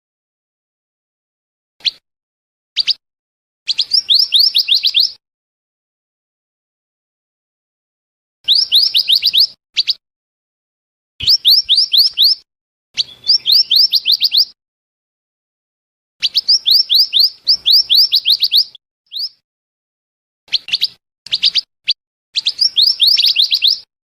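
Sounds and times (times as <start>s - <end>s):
bird call sharp rising whistles: 2.8s - 3.0s, 3.7s - 5.2s, 8.5s - 10.0s, 11.2s - 12.4s, 13.0s - 14.6s, 16.2s - 19.4s, 20.5s - 21.7s, 22.4s - 23.9s.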